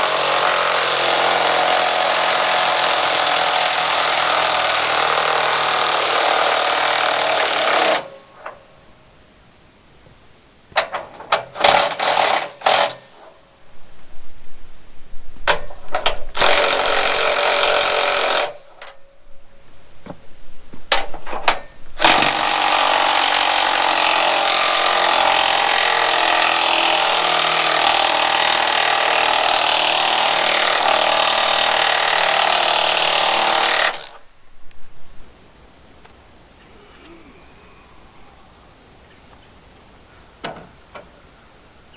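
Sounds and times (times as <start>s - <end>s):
power tool running: 0.0s - 8.2s, 11.6s - 13.1s, 16.3s - 18.7s, 22.0s - 34.3s.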